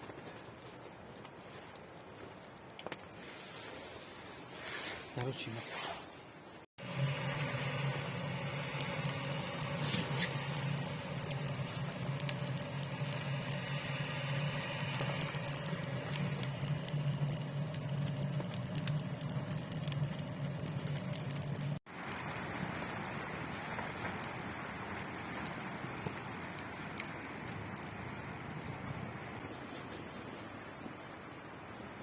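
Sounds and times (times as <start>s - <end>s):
low steady hum: 6.8s - 25.1s
rain pattering on tent fabric: 6.8s - 29.4s.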